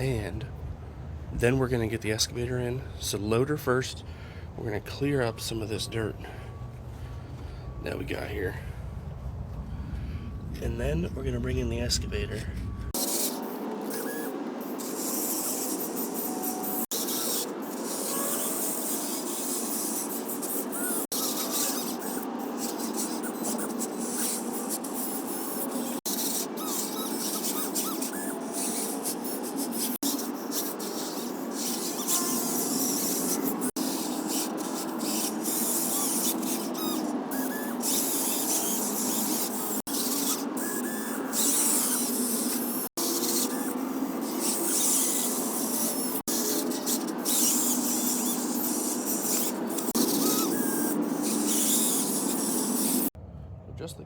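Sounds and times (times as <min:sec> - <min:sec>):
toy electric motors whirring: 0:12.9 - 0:53.2.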